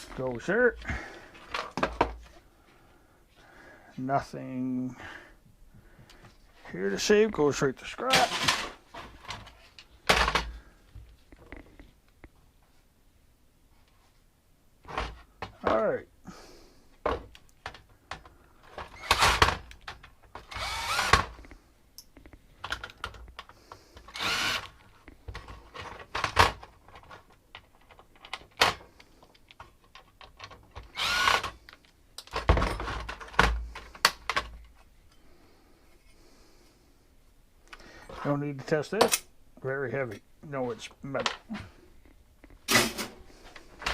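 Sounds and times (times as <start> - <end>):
clicks and knocks of handled parts: 17.0 - 20.5, 21.1 - 35.2, 38.9 - 39.3
cordless drill whirring: 18.9 - 19.4, 20.5 - 21.3, 24.1 - 24.8, 30.9 - 31.6.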